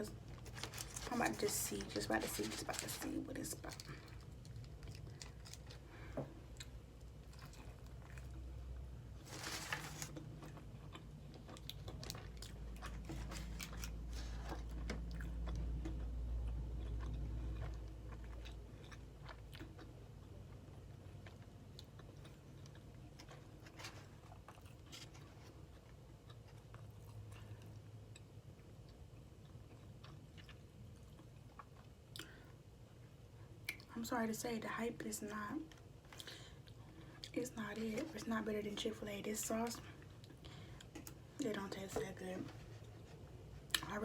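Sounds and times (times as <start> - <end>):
person chewing crispy food: 0.2 - 33.1.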